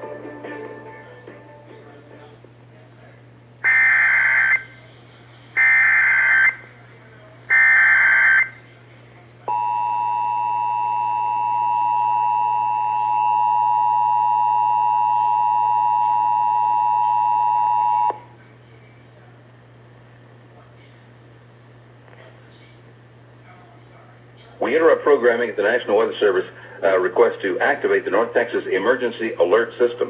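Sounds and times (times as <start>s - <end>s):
two-tone attention signal: 9.5s - 18.2s.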